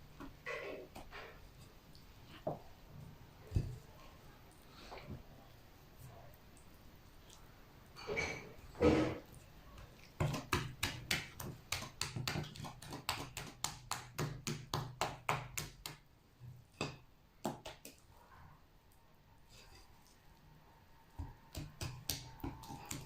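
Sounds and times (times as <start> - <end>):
utensil stirring batter in bowl: 8.2 - 16.0, 21.2 - 23.0.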